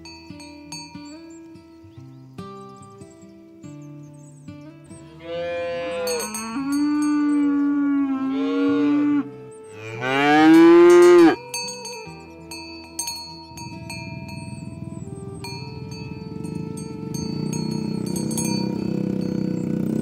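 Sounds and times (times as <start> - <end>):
cattle mooing: 5.1 - 11.4.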